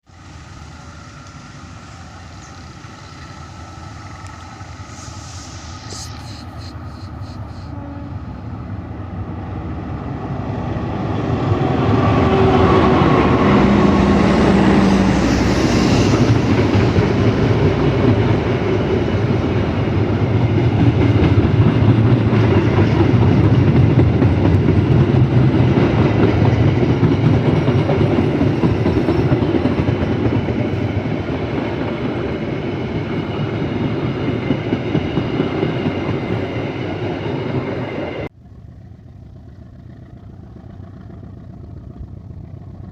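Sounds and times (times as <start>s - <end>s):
locomotive engine tone: 0.0s - 42.9s
train wheels clattering: 11.9s - 38.2s.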